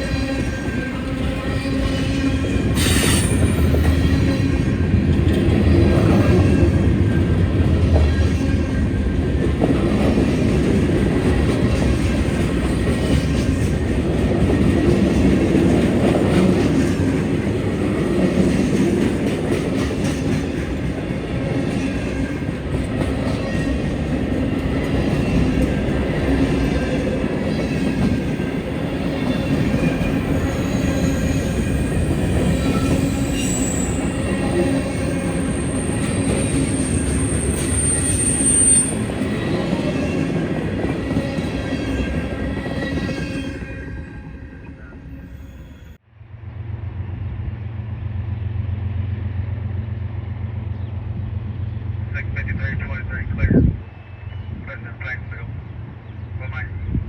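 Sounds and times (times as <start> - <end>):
freight train rumbling on rails: 0.0 - 57.0
wheel squeal: 2.7 - 4.0, 29.9 - 39.6.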